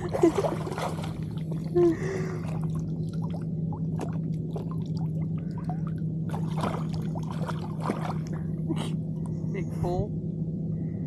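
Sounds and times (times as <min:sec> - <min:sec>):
shallow water splashing: 0:00.0 - 0:08.6
steady low hum: 0:00.0 - 0:11.0.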